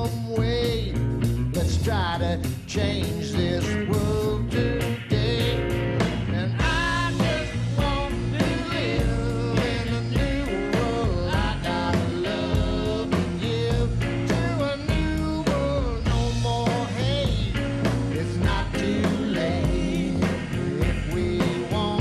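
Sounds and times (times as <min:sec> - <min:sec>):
bass guitar: 0:00.0 - 0:22.0
twangy electric guitar: 0:00.0 - 0:22.0
drum beat: 0:04.0 - 0:22.0.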